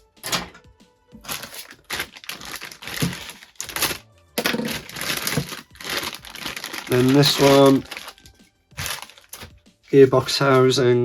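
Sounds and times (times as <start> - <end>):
plastic bags crinkling: 1.2 - 10.6.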